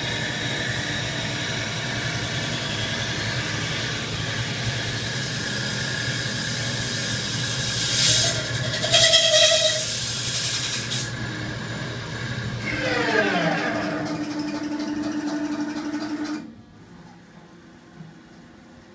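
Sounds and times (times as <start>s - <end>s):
lathe mechanical hum: 0.0s - 8.8s, 11.1s - 18.7s
whine falling in pitch: 12.6s - 14.9s.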